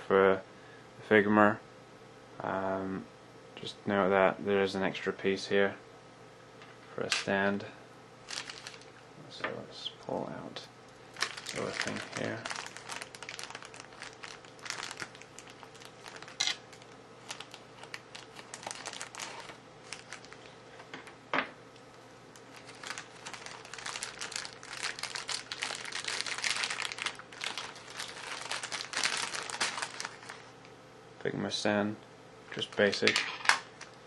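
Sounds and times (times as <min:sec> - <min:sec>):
plastic packaging crinkling: 0:08.2 - 0:09.0, 0:11.1 - 0:20.9, 0:22.3 - 0:30.7, 0:32.6 - 0:34.0.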